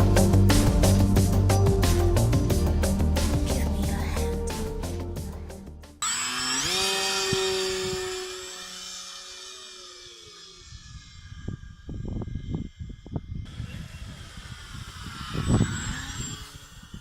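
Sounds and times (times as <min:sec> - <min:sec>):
background music: 0:00.0 - 0:06.0
small electric motor whine: 0:06.0 - 0:17.0.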